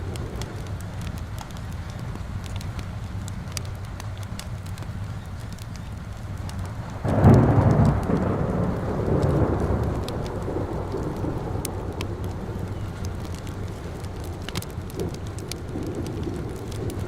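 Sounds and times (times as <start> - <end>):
thunder rumbling: 0.0 - 2.0, 6.8 - 17.0
fire crackling: 0.0 - 17.0
steady rain: 0.0 - 17.0.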